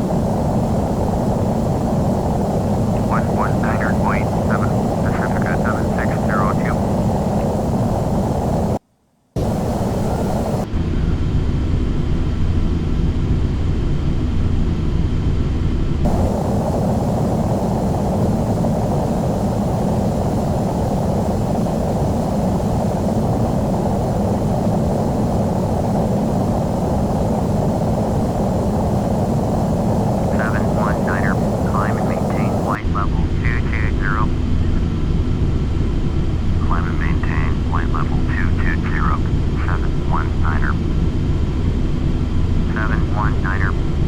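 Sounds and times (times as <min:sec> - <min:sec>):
jet engine cabin noise: 0:00.0 - 0:08.8, 0:09.4 - 0:44.0.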